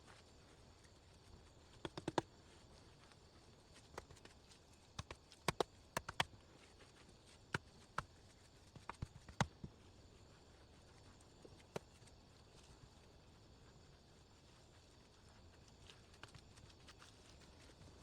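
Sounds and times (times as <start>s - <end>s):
faint steady hiss: 0.0s - 18.0s
sharp knocks and clicks: 1.8s - 2.2s.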